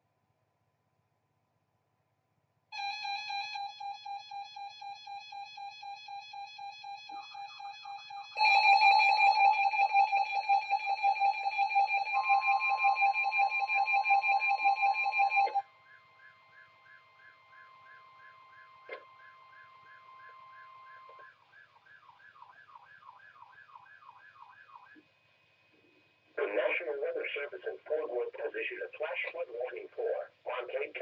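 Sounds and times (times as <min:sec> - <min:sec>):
electronic alarm beeping rapidly: 0:02.8 - 0:21.1
steady alarm tone: 0:02.8 - 0:24.9
loud alarm: 0:02.8 - 0:25.0.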